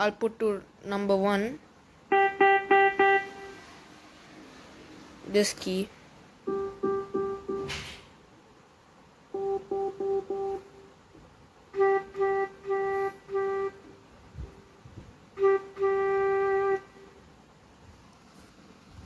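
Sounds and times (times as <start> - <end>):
digital keyboard notes: 2.1 - 3.6, 6.4 - 7.8, 9.3 - 10.9, 11.7 - 14.0, 15.3 - 17.0.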